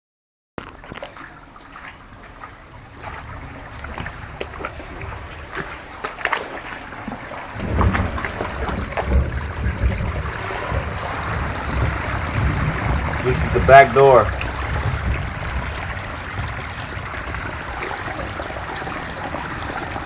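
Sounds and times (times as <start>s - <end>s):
floodwater sloshing and trickling: 0.6s - 20.0s
small splashes and knocks: 0.6s - 20.0s
deep rumble: 7.2s - 20.0s.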